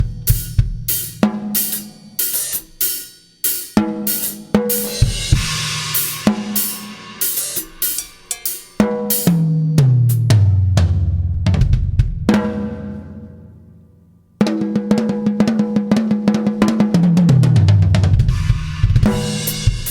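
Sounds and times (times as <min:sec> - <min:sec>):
drum fill on toms: 0:00.0 - 0:03.0, 0:03.6 - 0:13.2, 0:14.4 - 0:19.9
drum kit playing: 0:00.0 - 0:13.4, 0:14.4 - 0:19.9
crash cymbal ringing: 0:05.2 - 0:08.8.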